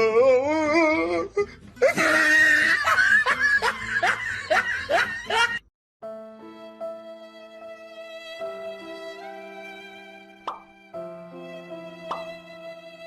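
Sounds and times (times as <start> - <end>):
wavering vocal cry: 0.0 - 4.7
person laughing: 1.8 - 5.6
slow violin music: 6.0 - 13.0.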